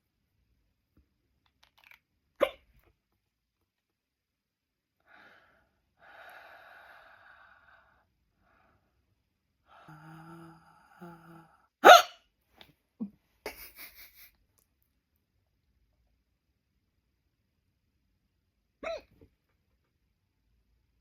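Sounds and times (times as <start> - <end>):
girl hiccuping: 11.8 - 12.2, 18.8 - 19.2.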